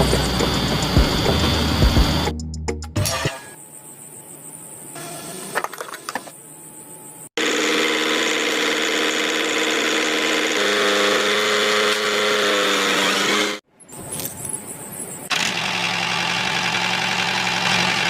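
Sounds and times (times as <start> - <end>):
small motor whining: 7.4 - 13.6, 15.3 - 18.0.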